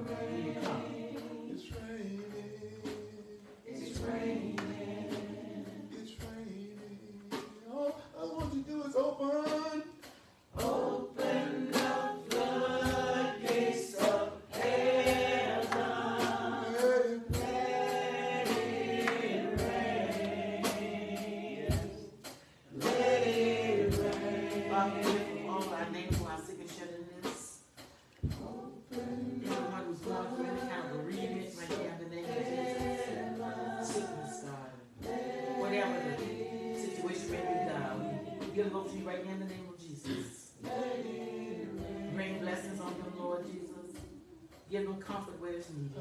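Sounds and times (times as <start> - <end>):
group gospel singing: 0.0 - 46.0
sharp rhythmic strikes: 0.0 - 46.0.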